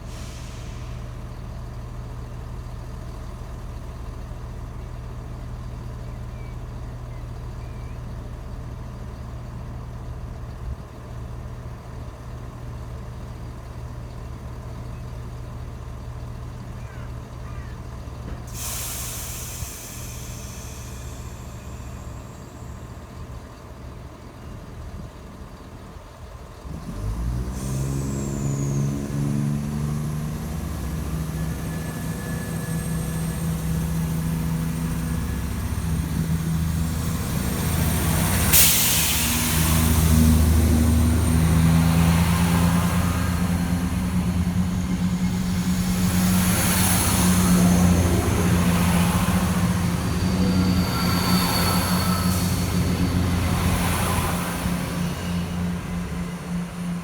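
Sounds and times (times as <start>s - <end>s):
air hiss: 0.0s - 1.2s, 18.5s - 22.5s, 31.6s - 57.0s
diesel train engine: 0.0s - 57.0s.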